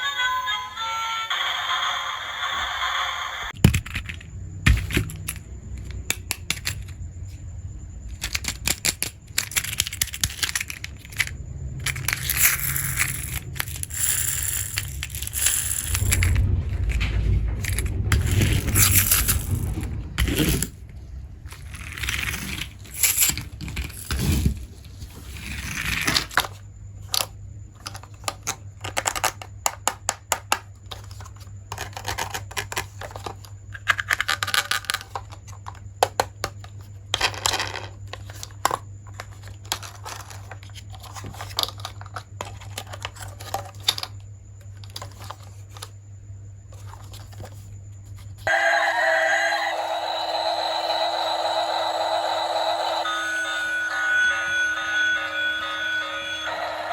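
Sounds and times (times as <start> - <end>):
steady low hum: 2.4 - 23.3
plastic toy pieces clicking: 3.6 - 7.0, 8.1 - 16.4, 25.8 - 36.3.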